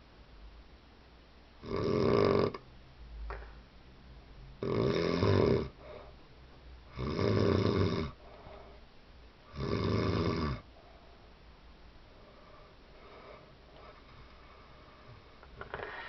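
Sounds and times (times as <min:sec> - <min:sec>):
person snoring: 0:04.6 - 0:05.8, 0:09.5 - 0:10.6.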